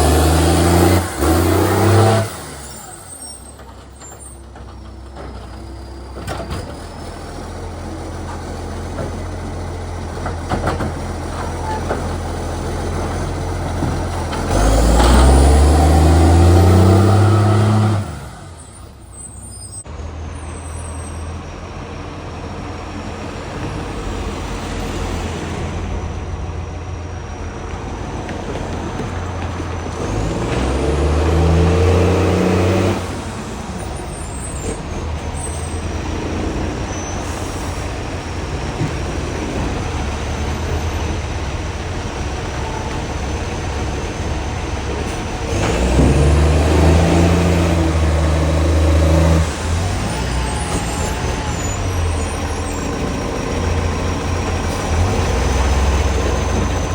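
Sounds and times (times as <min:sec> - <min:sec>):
diesel engine revving: 0:00.0 - 0:56.9
diesel engine idling: 0:33.1 - 0:56.9.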